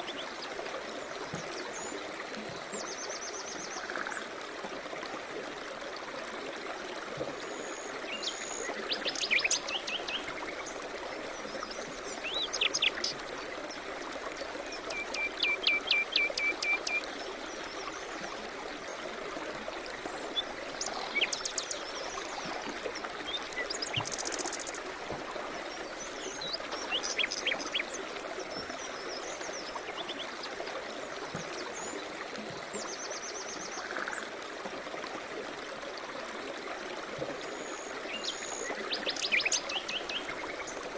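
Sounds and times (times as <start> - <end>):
stream flowing: 0.0 - 40.9
songbirds singing: 14.7 - 17.0, 20.0 - 32.1, 37.7 - 40.8.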